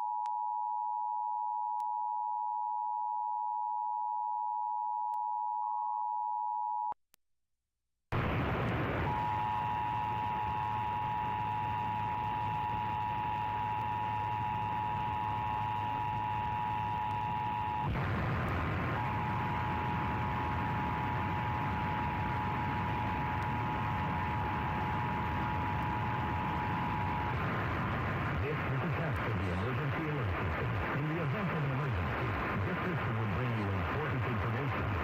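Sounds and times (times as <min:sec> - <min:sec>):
low hum: 0:08.2 - 0:35.0.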